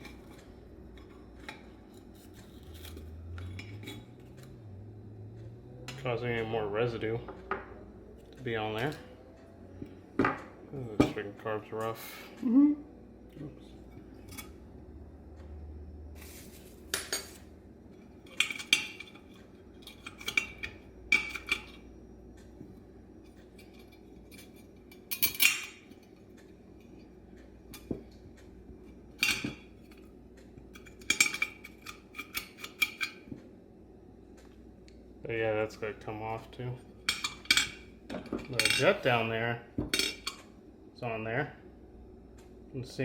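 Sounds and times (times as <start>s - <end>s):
metal tools scraping and clinking: 0.0s - 4.6s, 18.0s - 21.8s, 37.0s - 39.3s.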